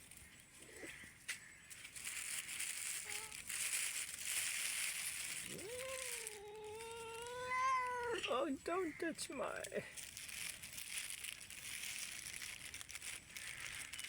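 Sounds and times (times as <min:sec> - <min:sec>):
crunching and rustling: 0:00.0 - 0:14.0
cat meowing: 0:05.5 - 0:08.3.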